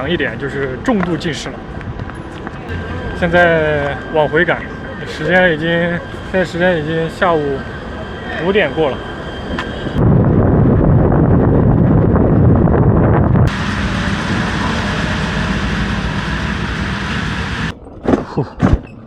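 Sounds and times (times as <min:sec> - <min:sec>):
vehicle travel rumble: 0:01.6 - 0:06.6, 0:09.6 - 0:18.5
wind on microphone: 0:09.2 - 0:18.9.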